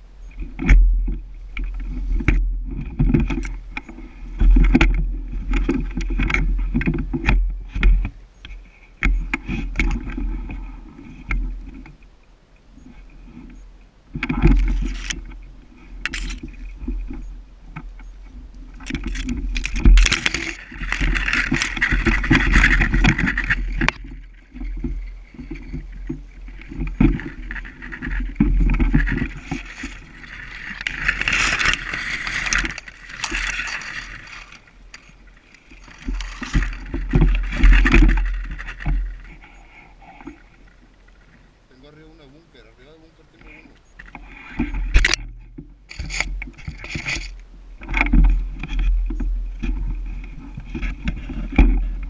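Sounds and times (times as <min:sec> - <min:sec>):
rustling through brush: 0:00.0 - 0:52.0
wind rumble: 0:00.0 - 0:52.0
camera handling noise: 0:18.8 - 0:24.0.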